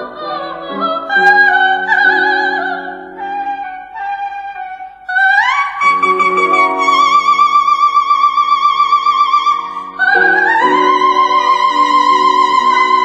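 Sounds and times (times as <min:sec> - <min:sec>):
piano chords: 0:00.0 - 0:04.2, 0:05.2 - 0:13.0.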